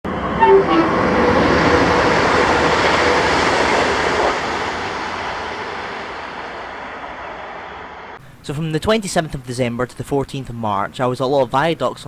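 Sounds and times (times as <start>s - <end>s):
train rail rumble: 0.1s - 10.0s
short tones: 0.3s - 1.4s.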